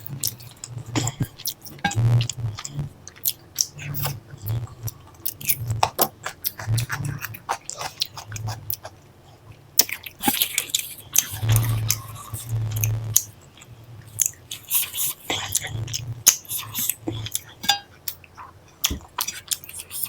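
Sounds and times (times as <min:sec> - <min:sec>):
wet chewing and mouth sounds: 0:00.0 - 0:20.0.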